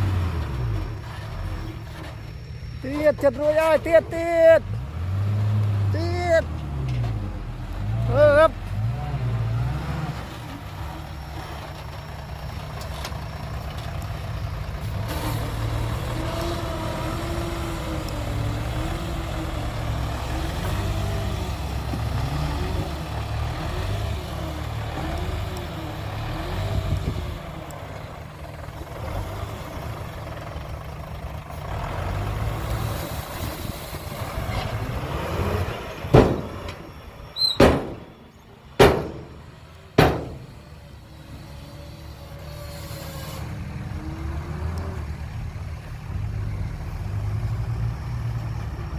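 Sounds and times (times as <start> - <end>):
heavy engine revving: 0.0 - 2.0, 4.6 - 48.9
sharp knocks: 36.1 - 36.7, 37.6 - 38.1, 38.8 - 39.4, 40.0 - 40.5.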